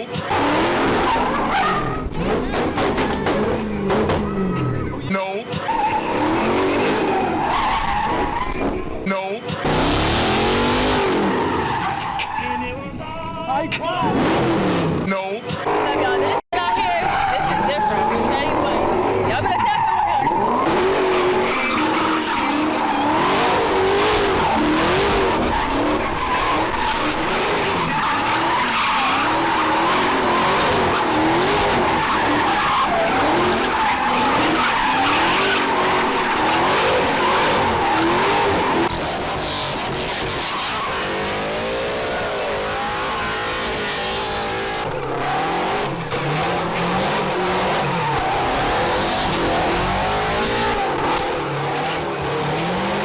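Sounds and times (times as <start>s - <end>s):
car engines revving: 0.0s - 53.0s
tires screeching: 0.0s - 53.0s.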